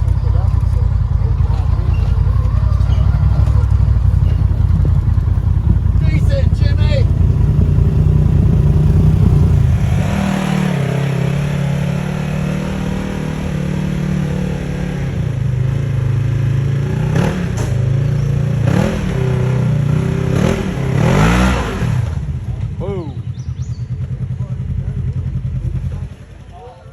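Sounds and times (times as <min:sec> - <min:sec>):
utility vehicle engine revving: 0:00.0 - 0:26.5.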